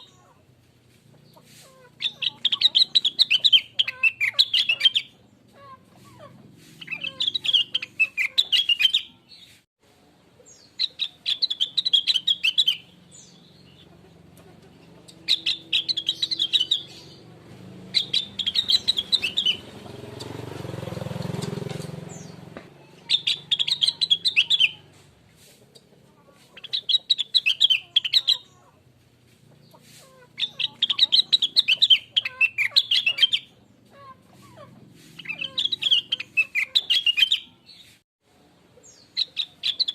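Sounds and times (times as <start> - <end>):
bird singing rapid high chirps: 2.0 - 5.4, 6.8 - 9.6, 10.5 - 13.9, 14.8 - 24.9, 26.6 - 28.7, 29.6 - 34.1, 35.1 - 38.0, 38.8 - 39.9.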